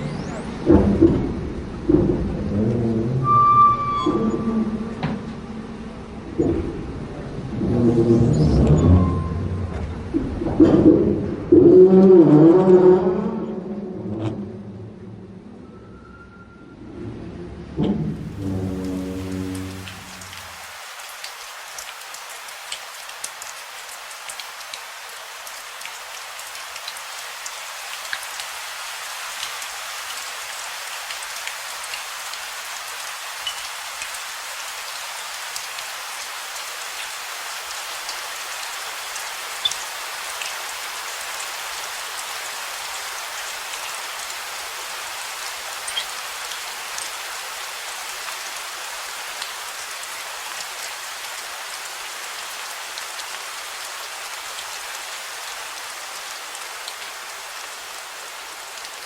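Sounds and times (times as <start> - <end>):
steady rain falling: 0.0 - 14.8, 16.8 - 59.0
raindrops ticking: 18.3 - 28.7, 29.3 - 44.4, 45.1 - 47.2.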